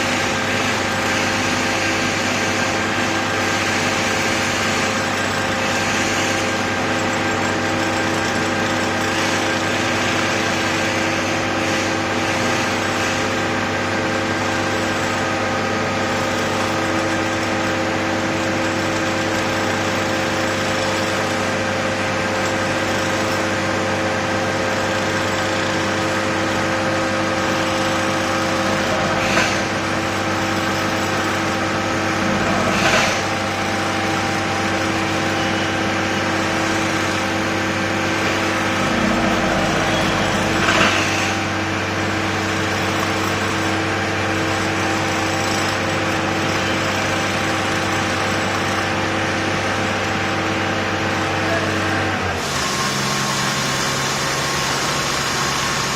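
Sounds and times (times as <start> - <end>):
machine engine humming: 10.9 - 52.4.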